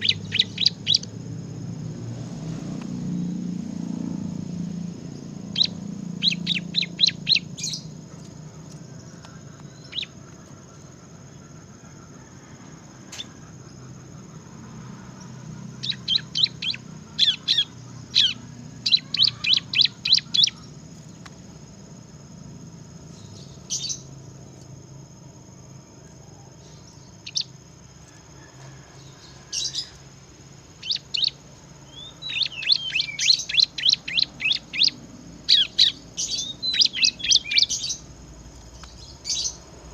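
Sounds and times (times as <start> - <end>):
bird singing sharp high chirps: 0.0 - 1.1, 5.1 - 8.0, 15.7 - 20.7, 30.8 - 38.0.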